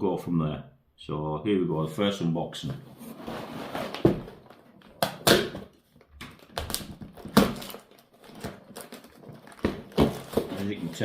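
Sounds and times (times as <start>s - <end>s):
plastic pieces knocking and clattering: 4.3s - 10.7s
plastic bags rustling: 6.3s - 11.0s.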